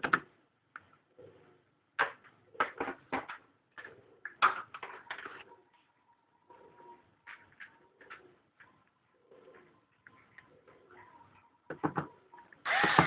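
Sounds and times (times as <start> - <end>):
dove cooing: 7.8 - 11.5.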